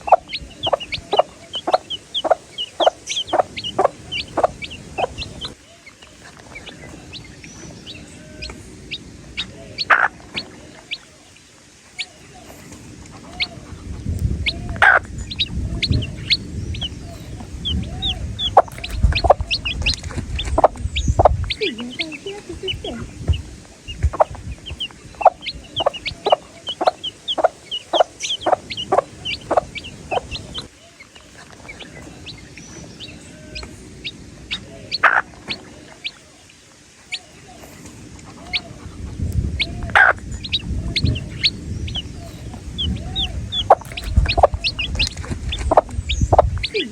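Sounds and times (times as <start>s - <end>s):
baby chicks peeping: 0.0s - 46.9s
low rumble: 12.9s - 30.7s, 38.6s - 46.8s.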